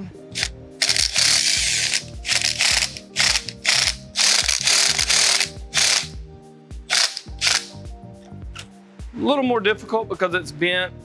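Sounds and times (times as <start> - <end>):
ratchet wrench clicking: 0.0 - 6.1, 6.9 - 7.8.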